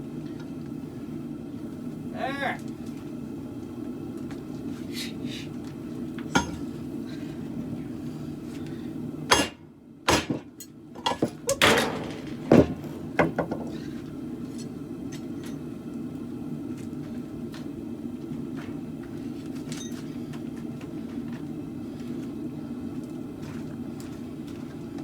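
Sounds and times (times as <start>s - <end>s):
forge rumbling: 11.6s - 14.4s.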